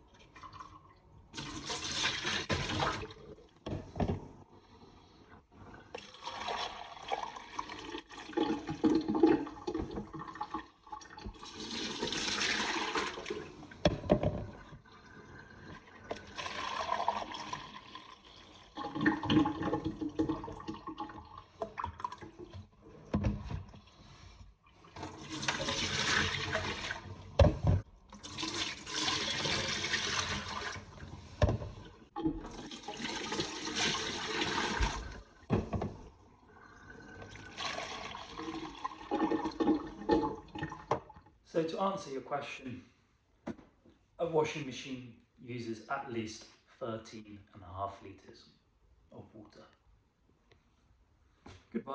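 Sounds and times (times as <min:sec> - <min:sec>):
water pouring from container: 0:00.2 - 0:03.4, 0:05.7 - 0:13.8, 0:14.4 - 0:23.0, 0:23.7 - 0:27.4, 0:28.1 - 0:35.5, 0:36.5 - 0:41.1.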